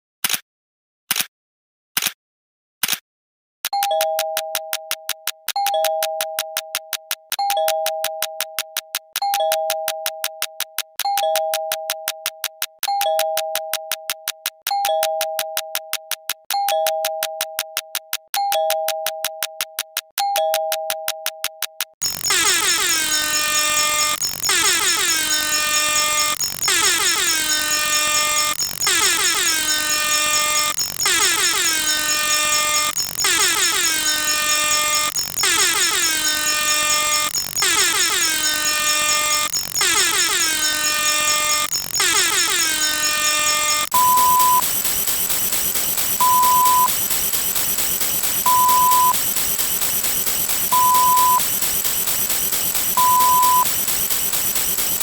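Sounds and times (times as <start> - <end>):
short beep: 22.0 - 55.0.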